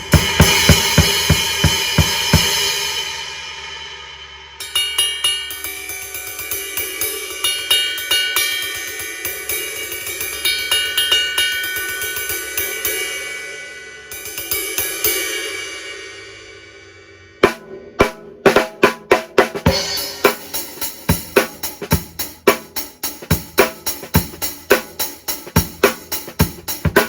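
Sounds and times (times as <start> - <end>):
cymbals ringing: 0.0 - 17.3, 19.7 - 21.2.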